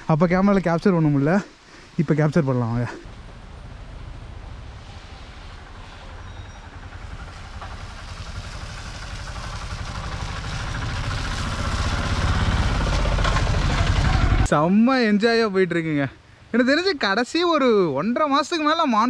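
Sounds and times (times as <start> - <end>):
vehicle engine throbbing: 3.0 - 14.5.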